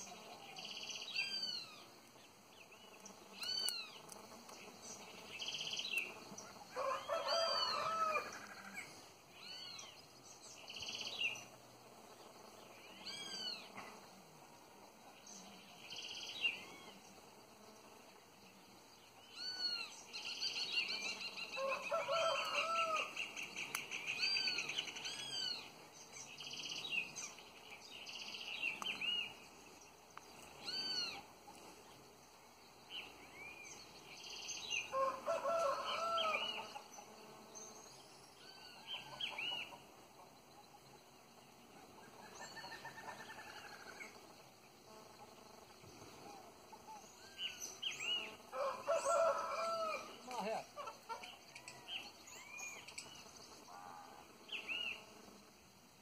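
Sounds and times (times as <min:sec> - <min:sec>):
birds chirping: 0:00.0 - 0:55.7
lower-pitched bird calls: 0:13.0 - 0:13.7, 0:30.6 - 0:31.3.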